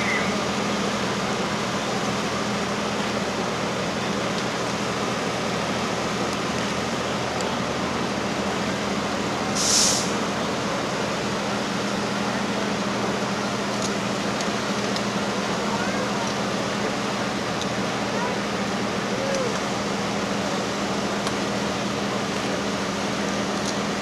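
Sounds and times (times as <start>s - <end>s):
locomotive engine humming: 0.0s - 24.0s
short hiss: 9.6s - 10.2s.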